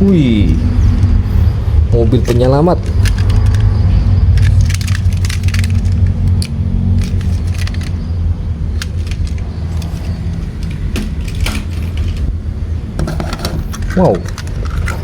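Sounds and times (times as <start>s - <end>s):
low mechanical hum: 0.0s - 15.0s
plastic toy vehicles clattering: 4.3s - 8.1s, 8.8s - 12.3s, 13.0s - 15.0s.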